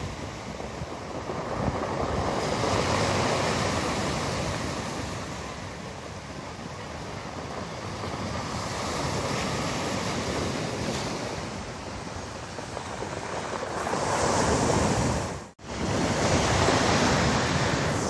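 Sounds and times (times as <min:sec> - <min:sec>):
surf breaking on pebble beach: 0:07.8 - 0:18.0.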